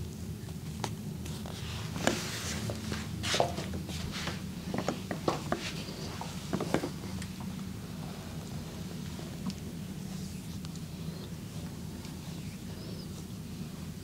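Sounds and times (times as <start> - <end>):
steady low hum: 0.0 - 14.0
hands rubbing skin and cloth: 1.2 - 7.2.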